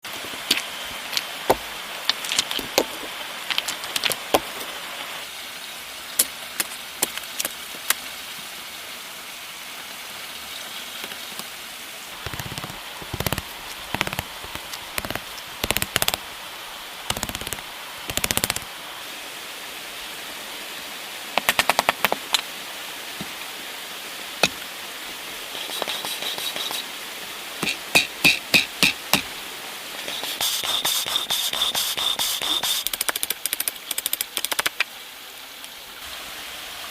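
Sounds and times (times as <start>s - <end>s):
steady hiss: 8.3s - 36.9s.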